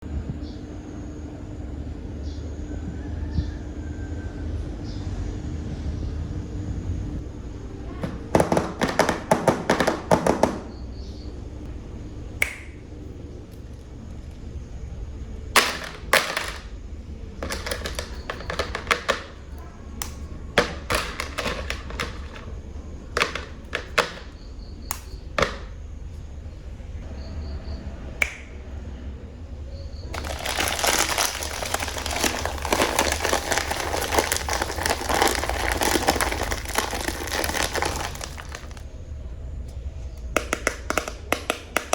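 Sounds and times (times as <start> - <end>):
plastic toys clicking and knocking: 7.9 - 10.7, 15.5 - 16.8, 17.4 - 25.8, 30.1 - 38.9, 40.2 - 41.9
crinkly rustling: 17.4 - 19.6, 20.6 - 22.6, 30.1 - 38.9.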